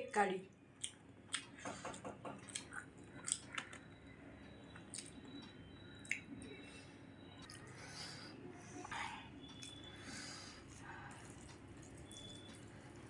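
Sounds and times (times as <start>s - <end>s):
chewing: 2.4s - 3.9s, 10.7s - 13.0s.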